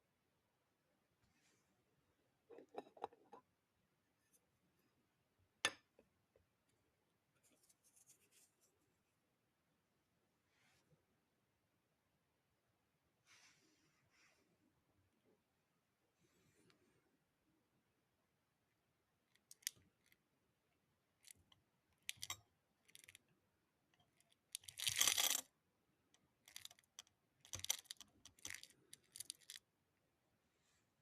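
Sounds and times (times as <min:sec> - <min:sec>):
small clicks and rattles of pellets: 0:19.3 - 0:20.2, 0:21.2 - 0:23.2, 0:24.2 - 0:25.5, 0:26.4 - 0:29.6.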